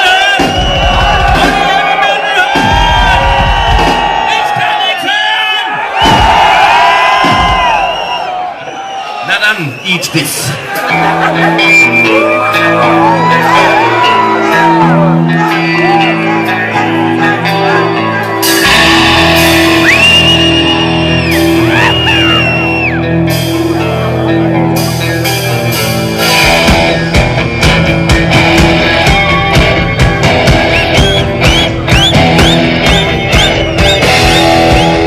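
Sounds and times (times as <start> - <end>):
live rock band playing: 0.0 - 4.6, 10.5 - 35.0
drums fast beat: 0.2 - 4.8, 6.0 - 8.1, 26.2 - 35.0.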